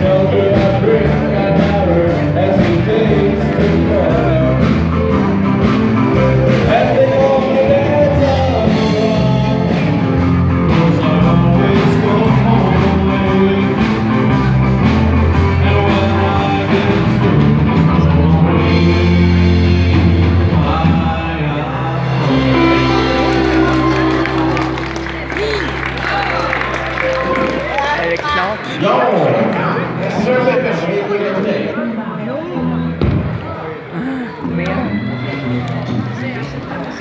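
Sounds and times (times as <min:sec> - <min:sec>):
person singing: 0:00.0 - 0:14.5, 0:15.3 - 0:27.6, 0:33.9 - 0:36.2
bass guitar: 0:00.0 - 0:31.6, 0:32.2 - 0:37.0
guitar: 0:00.0 - 0:37.0.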